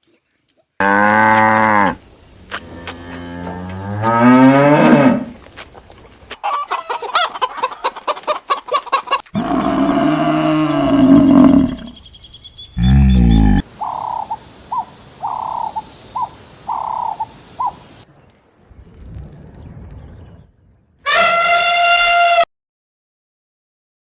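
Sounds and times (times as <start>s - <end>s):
cow mooing: 0.8s - 2.0s, 2.7s - 5.3s, 9.4s - 11.9s, 12.8s - 13.6s
chicken clucking: 6.4s - 9.4s.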